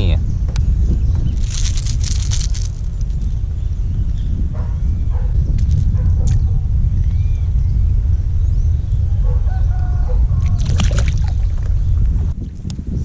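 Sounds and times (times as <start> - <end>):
wind rumble on microphone: 0.0 - 13.0
sharp clicks and splashes: 10.5 - 11.7.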